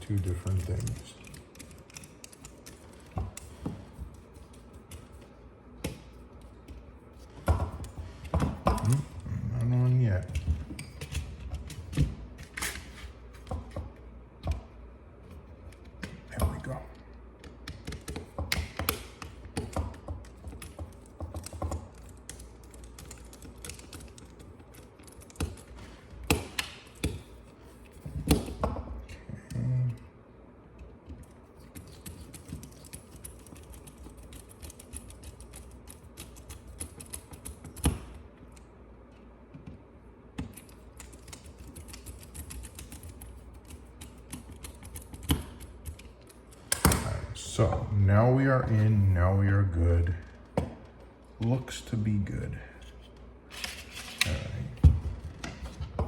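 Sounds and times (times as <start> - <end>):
small clicks and taps of parts: 15.7 - 27.2.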